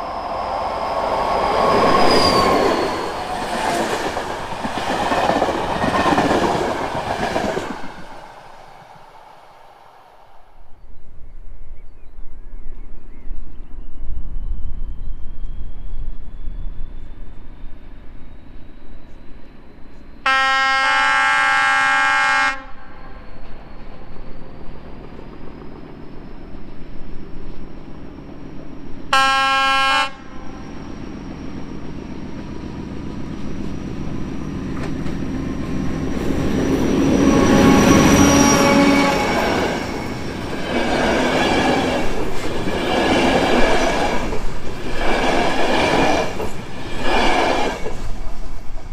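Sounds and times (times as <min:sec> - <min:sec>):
train wheel noise: 0:00.0 - 0:10.4, 0:22.8 - 0:29.2, 0:30.4 - 0:48.9
diesel locomotive whine: 0:00.0 - 0:48.9
locomotive horn blasts: 0:20.3 - 0:22.8, 0:29.1 - 0:30.6, 0:37.2 - 0:39.5.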